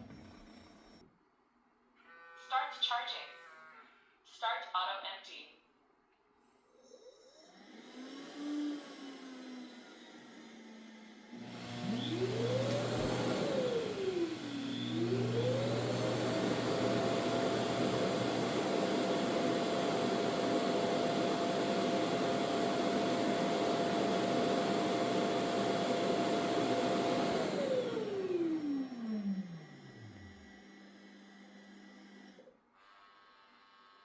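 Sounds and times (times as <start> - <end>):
vacuum suction motor whine: 7.4 - 32.4.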